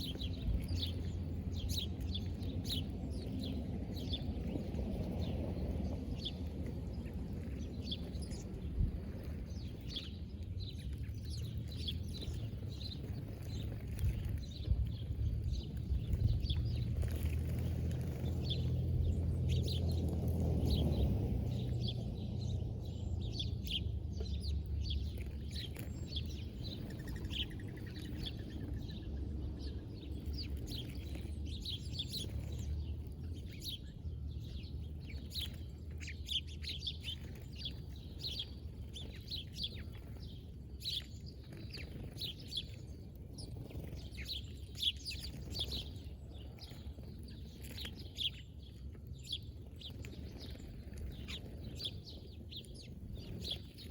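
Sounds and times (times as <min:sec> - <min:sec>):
small birds chirping: 0:00.0 - 0:53.9
steady low rumble: 0:00.0 - 0:53.9.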